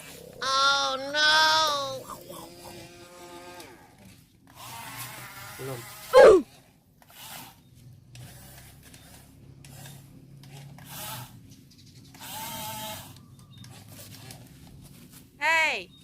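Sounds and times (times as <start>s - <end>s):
small electric motors whirring: 3.5s - 11.4s, 12.1s - 14.4s
short loud falling cry: 6.2s - 6.4s.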